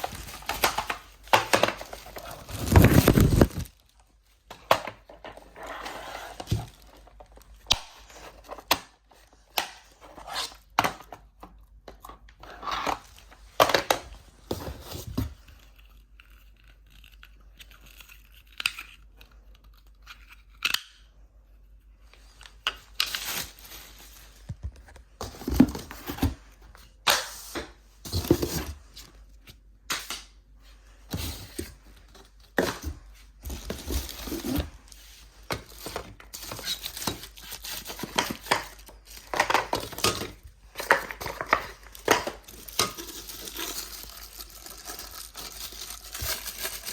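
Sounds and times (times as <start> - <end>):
cardboard and plastic crinkling: 0.0 - 11.4, 12.8 - 15.8, 22.2 - 26.9, 27.5 - 29.3, 31.0 - 46.9.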